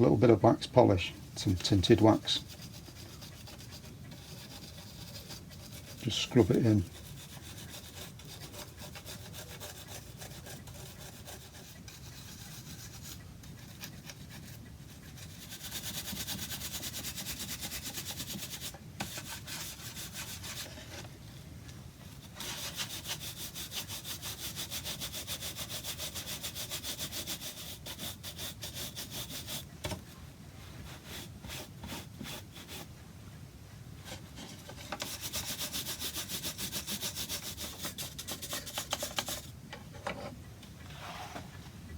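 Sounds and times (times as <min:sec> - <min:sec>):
rapid rubbing on wood: 0:01.4 - 0:21.0, 0:22.3 - 0:30.0, 0:34.4 - 0:39.5.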